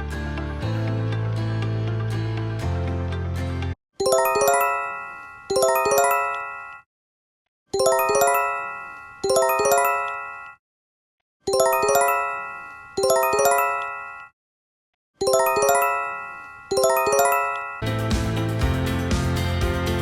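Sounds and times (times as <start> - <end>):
electronic alert chime: 4.0 - 6.9, 7.8 - 10.6, 11.5 - 14.3, 15.2 - 17.8.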